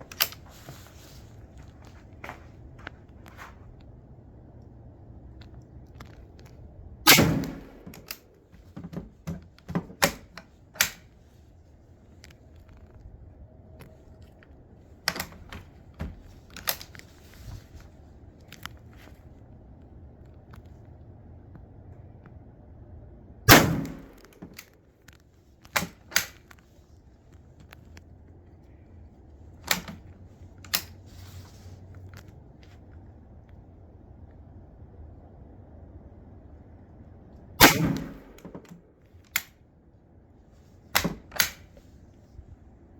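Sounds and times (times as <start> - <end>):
rifle bolt clicks and knocks: 0.0 - 0.8, 7.1 - 11.1, 15.1 - 17.3, 23.5 - 26.6, 29.6 - 31.0, 37.6 - 39.6, 41.0 - 41.8
rifle shots reverberating: 7.1 - 8.2, 23.5 - 24.4, 37.6 - 38.5.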